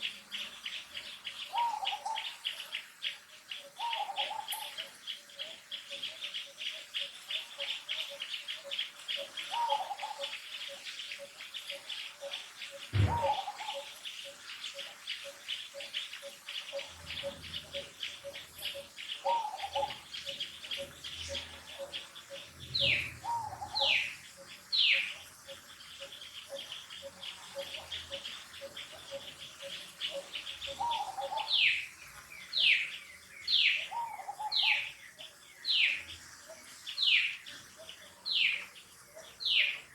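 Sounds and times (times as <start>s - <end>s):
birds chirping: 0.0s - 39.9s
loud falling bird calls: 12.9s - 13.8s
short bird call: 13.0s - 13.7s.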